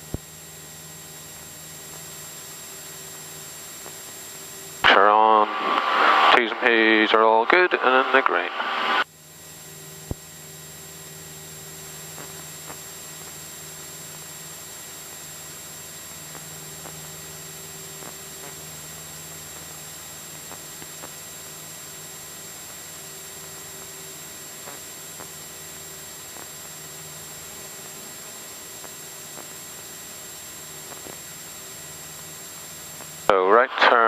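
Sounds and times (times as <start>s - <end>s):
faint aircraft engine drone: 0.0s - 34.0s
intercom hiss and hum: 4.8s - 9.1s, 12.0s - 34.0s.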